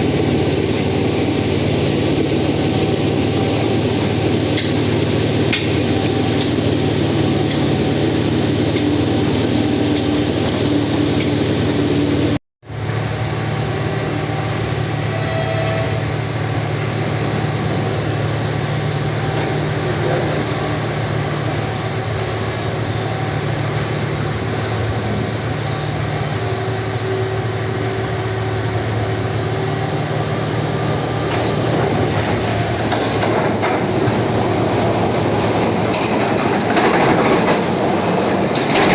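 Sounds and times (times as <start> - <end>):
mechanical rail noise: 0.0 - 38.9
brief squeals: 12.7 - 17.9, 23.1 - 28.8, 37.3 - 38.9.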